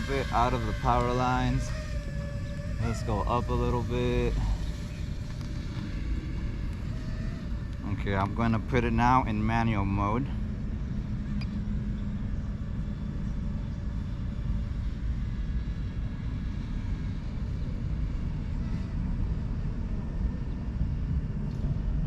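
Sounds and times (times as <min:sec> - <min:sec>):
drone motors whining: 0:00.0 - 0:22.0
low rumbling noise: 0:00.0 - 0:22.0.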